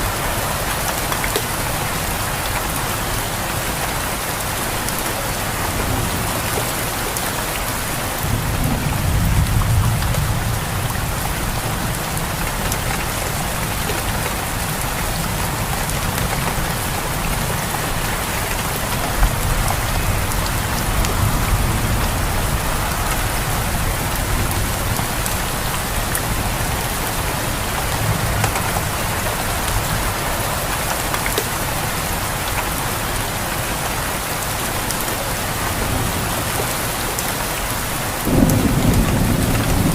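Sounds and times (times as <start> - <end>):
heavy rain pattering: 0.0 - 39.9
distant thunder rumbling: 13.6 - 30.3, 38.2 - 39.9.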